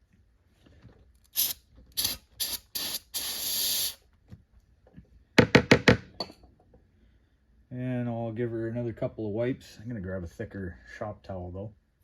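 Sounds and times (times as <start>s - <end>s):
aerosol can spraying: 1.3s - 4.0s.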